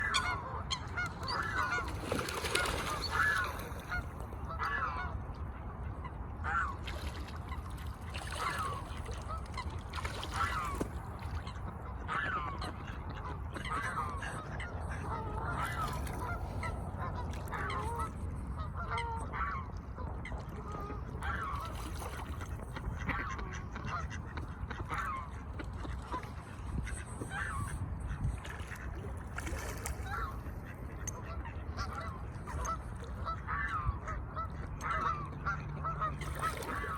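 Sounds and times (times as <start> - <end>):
swan honking: 0.0 - 5.0.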